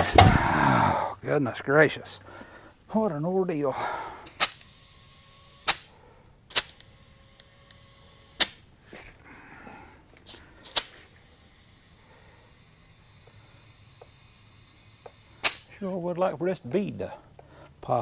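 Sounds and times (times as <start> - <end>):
metal knocks and clanks on wheel: 0.0 - 0.9.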